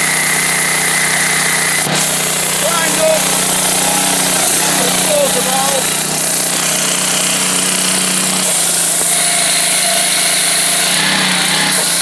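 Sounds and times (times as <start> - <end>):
engine running at full throttle: 0.0 - 12.0.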